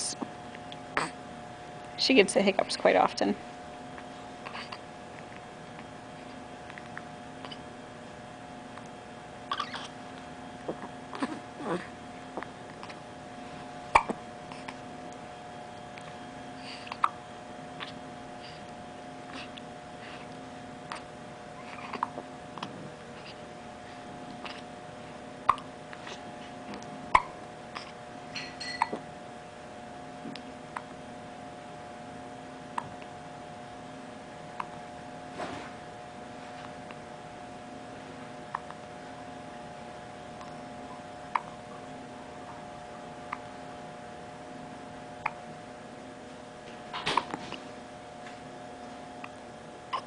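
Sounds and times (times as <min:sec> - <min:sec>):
baby hiccuping: 0:09.5 - 0:09.9, 0:13.9 - 0:14.2.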